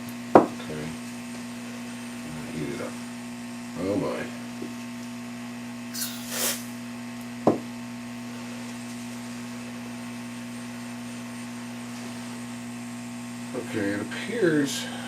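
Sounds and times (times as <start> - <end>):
electrical mains hum: 0.0 - 15.0
short hiss: 5.9 - 6.8.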